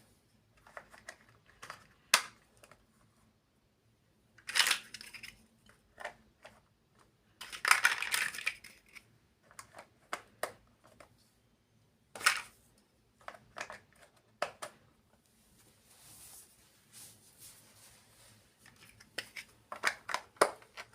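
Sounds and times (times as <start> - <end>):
plastic pieces rustling clatter: 4.4 - 5.4, 7.4 - 9.0
plastic blocks clicking together: 4.4 - 11.0, 13.2 - 14.8, 18.7 - 20.9.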